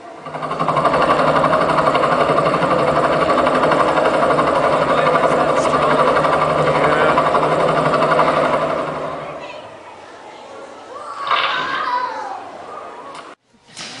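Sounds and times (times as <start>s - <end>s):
fast mechanical engine rattle: 0.0s - 9.8s.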